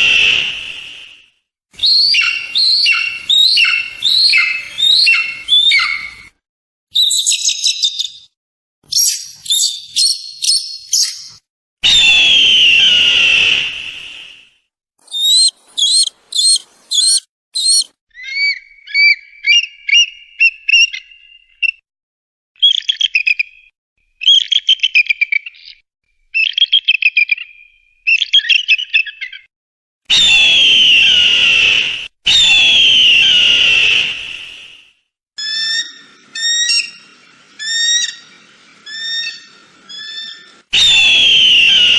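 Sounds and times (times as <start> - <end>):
eagle long screams: 1.8 - 6.2, 11.8 - 14.3, 15.1 - 18.4, 30.1 - 34.7, 35.4 - 41.9
eagle piping calls: 1.8 - 6.2, 15.0 - 21.2, 35.4 - 41.9.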